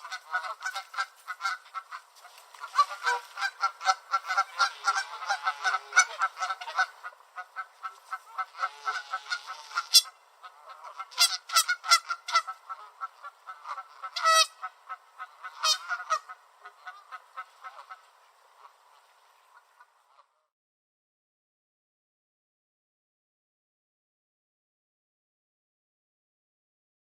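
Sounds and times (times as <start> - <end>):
geese honking: 0.0 - 20.4.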